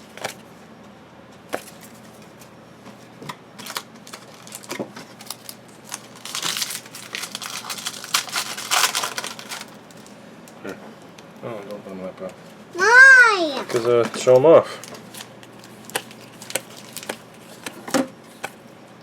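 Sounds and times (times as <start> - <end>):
foil wrapper crinkling: 3.6 - 10.1, 14.8 - 17.8
cards tapping and rustling: 13.6 - 18.6.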